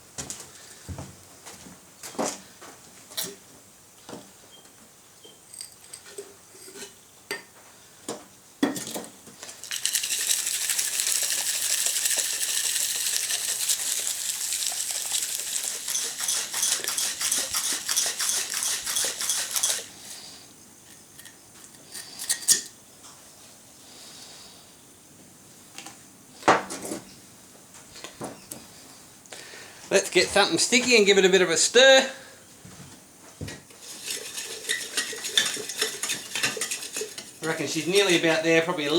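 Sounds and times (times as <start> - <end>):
rapid scraping of mortar: 9.5 - 20.4, 33.7 - 38.9.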